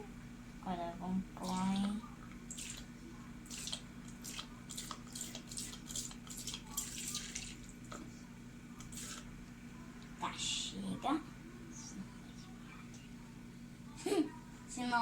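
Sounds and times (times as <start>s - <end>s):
liquid splashing into container: 2.5s - 8.0s.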